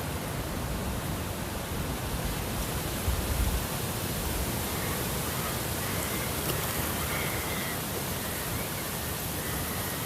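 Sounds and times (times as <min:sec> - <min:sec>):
rushing water: 0:00.0 - 0:10.0.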